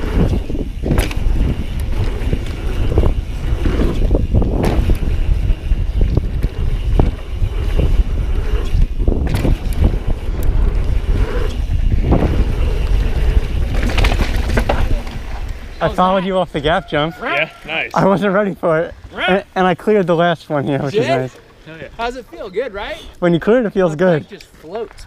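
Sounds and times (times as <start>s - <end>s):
bike clacking and rattling: 0.0s - 16.2s
wind buffeting microphone: 0.0s - 19.5s
tyres rumbling on dirt: 0.0s - 22.6s.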